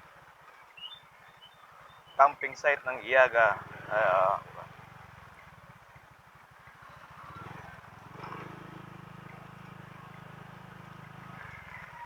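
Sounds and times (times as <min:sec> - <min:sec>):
motor scooter engine running: 0:03.3 - 0:12.0.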